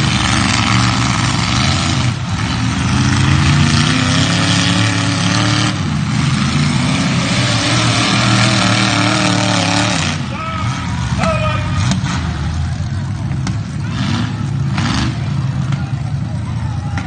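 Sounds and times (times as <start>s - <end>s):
car engine revving loudly: 0.0s - 12.4s.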